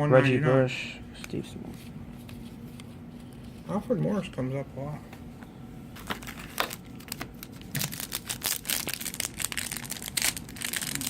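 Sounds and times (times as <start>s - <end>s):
foil wrapper crinkling: 6.0s - 11.0s.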